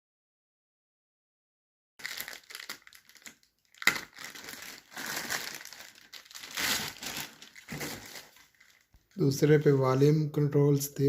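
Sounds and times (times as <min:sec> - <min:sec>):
packaging crinkling and rustling: 0:02.0 - 0:09.8.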